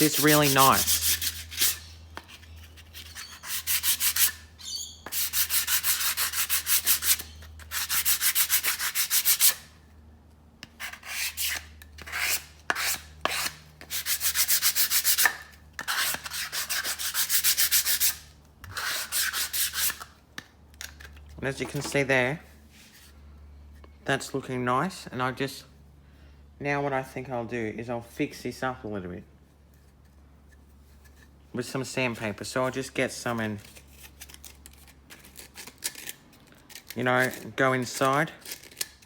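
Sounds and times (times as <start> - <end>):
sandpaper sanding: 0.0 - 1.8, 2.8 - 4.4, 5.1 - 9.7, 10.8 - 15.3, 15.9 - 20.0.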